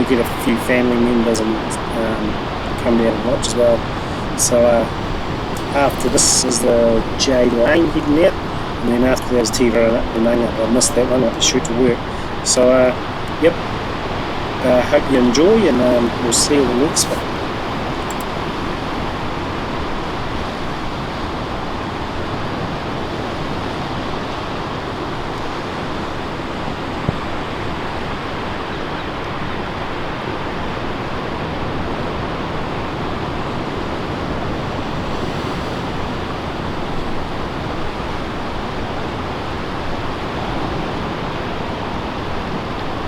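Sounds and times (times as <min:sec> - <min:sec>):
surf waves breaking: 0:00.0 - 0:43.0.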